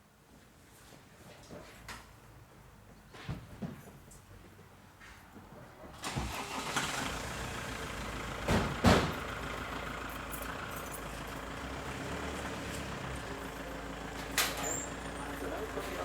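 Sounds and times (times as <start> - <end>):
diesel engine starting and idling: 5.9 - 16.0.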